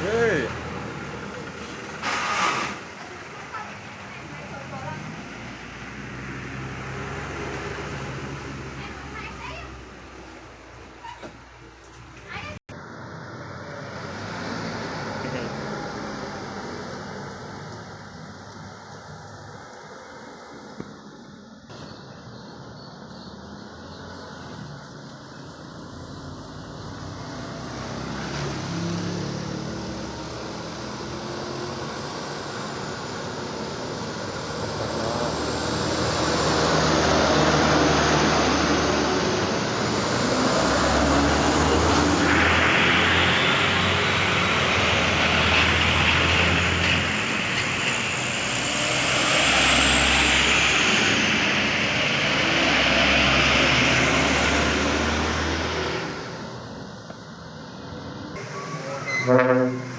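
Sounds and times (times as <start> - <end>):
truck engine drone: 0.0 - 59.9
tyre hiss on wet asphalt: 2.0 - 2.9.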